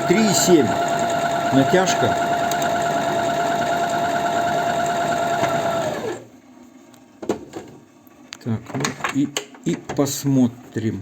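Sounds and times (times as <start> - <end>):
sewing machine stitching: 0.0 - 6.3.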